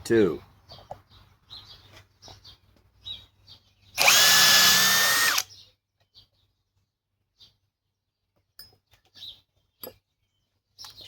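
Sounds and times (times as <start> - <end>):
cordless drill backing out screw: 4.0 - 5.5.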